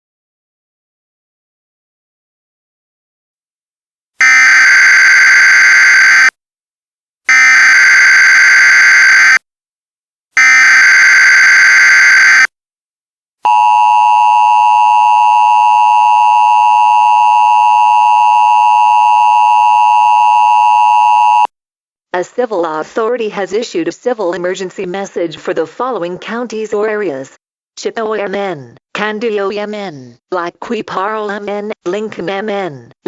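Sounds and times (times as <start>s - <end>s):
two-tone attention signal: 13.5s - 21.5s.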